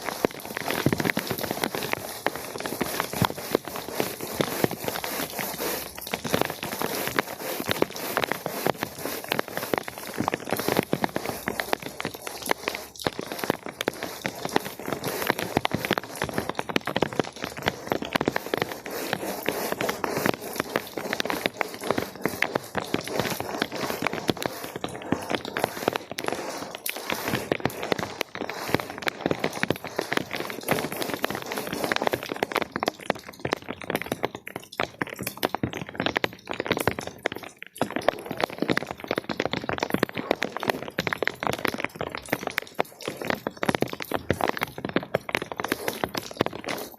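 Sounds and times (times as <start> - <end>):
wet carpet being scraped: 0.0 - 33.2
rain falling on hard surfaces: 0.0 - 46.9.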